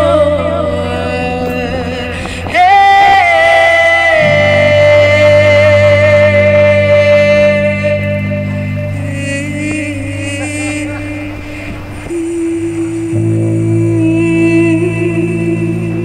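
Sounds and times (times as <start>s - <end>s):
low bass line: 0.0s - 16.0s
singer holding long note: 0.0s - 16.0s
sustained band chords: 0.0s - 16.0s.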